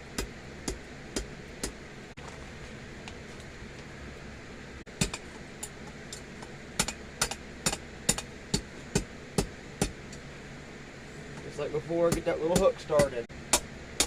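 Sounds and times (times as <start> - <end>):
hammer striking on anvil: 5.0 - 5.8, 12.1 - 13.7.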